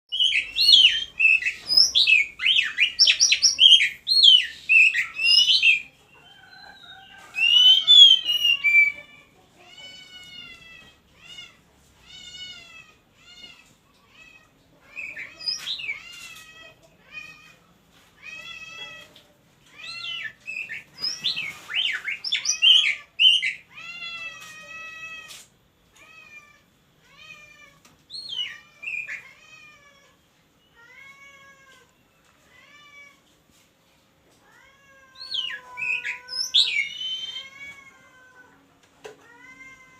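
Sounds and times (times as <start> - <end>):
bird whistling varied phrases: 35.2 - 37.5.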